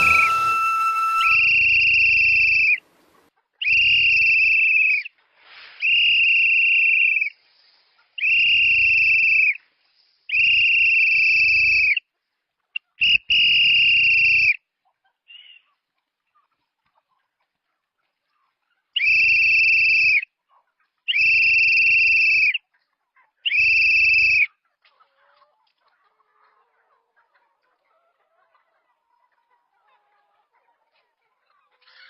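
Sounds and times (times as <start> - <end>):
brief whistle chirps: 0.0 - 2.8
shrill whistle blasts: 0.0 - 2.8, 5.8 - 7.3, 8.2 - 9.5, 10.3 - 11.8, 19.0 - 20.1.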